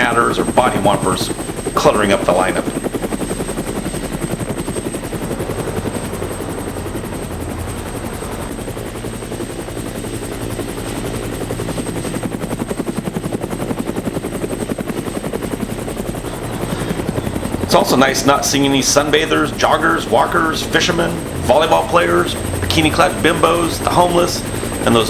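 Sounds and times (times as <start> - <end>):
helicopter rotor chopping: 0.0 - 25.0
thin high whine: 16.2 - 25.0.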